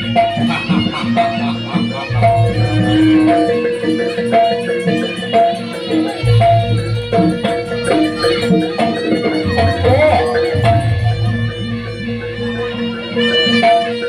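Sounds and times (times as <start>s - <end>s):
deep bass: 0.0s - 3.6s, 9.5s - 12.9s
live band music: 0.0s - 14.0s
percussion strikes: 0.0s - 14.0s
sustained melody notes: 0.0s - 14.0s.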